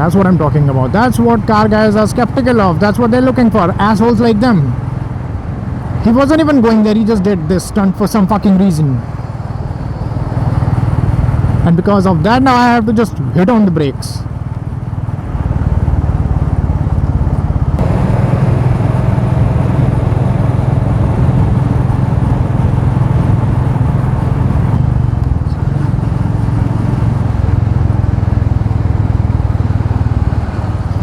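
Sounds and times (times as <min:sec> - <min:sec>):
motorcycle engine running: 0:09.0 - 0:31.0
wind rushing over microphone: 0:14.3 - 0:31.0.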